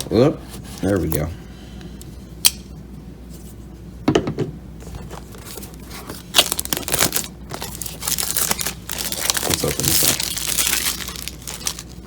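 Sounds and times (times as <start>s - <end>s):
shrink wrap crinkling and tearing: 5.0s - 12.0s.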